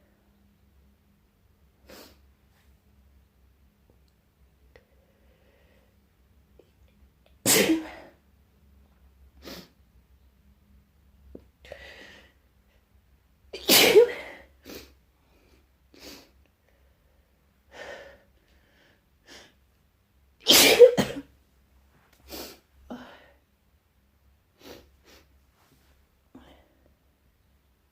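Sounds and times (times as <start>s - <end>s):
person sneezing: 7.5s - 8.2s, 13.6s - 14.8s, 20.5s - 21.3s.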